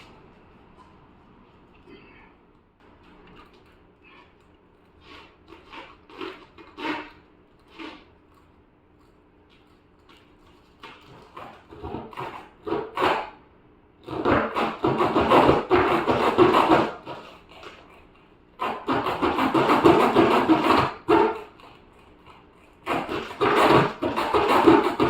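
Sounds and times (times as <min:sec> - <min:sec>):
reaming tool rasping against rubber: 0:05.0 - 0:08.1.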